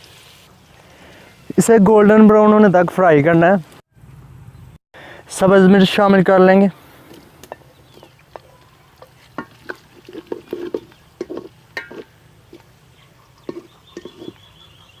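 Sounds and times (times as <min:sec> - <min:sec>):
spoon scraping and knocking pot: 0:07.5 - 0:12.6, 0:13.4 - 0:14.4.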